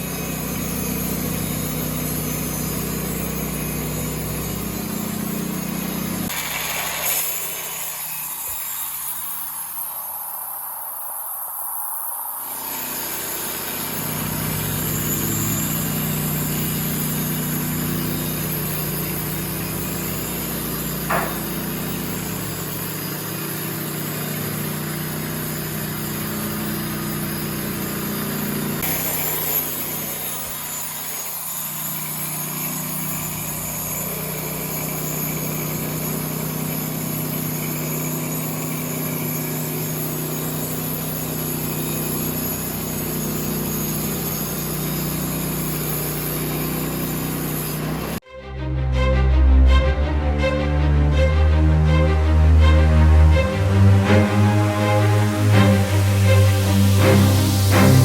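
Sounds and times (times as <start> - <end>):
sawmill engine running: 0.0 - 10.7, 12.3 - 58.0
sharp knock: 21.1 - 21.6.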